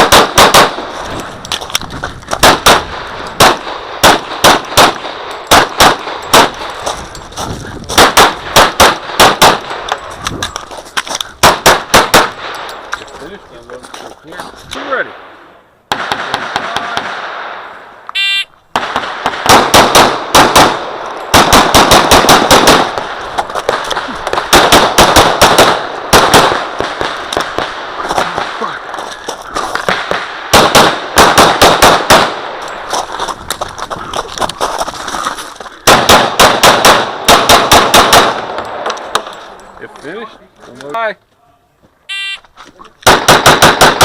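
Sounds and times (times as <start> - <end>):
pistol firing: 0.0 - 0.8, 2.4 - 6.6, 8.0 - 10.0, 11.4 - 12.6, 18.7 - 28.6, 29.9 - 32.6, 35.8 - 39.3, 43.0 - 44.0
shot timer beep: 18.1 - 18.5, 42.1 - 42.4.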